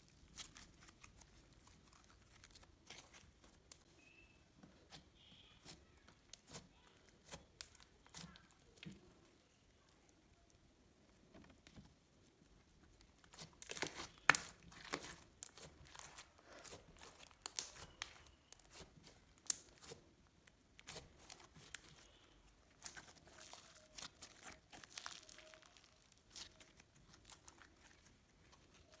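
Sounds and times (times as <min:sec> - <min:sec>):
slime clicking and popping: 0:13.6 - 0:18.8, 0:19.4 - 0:19.8.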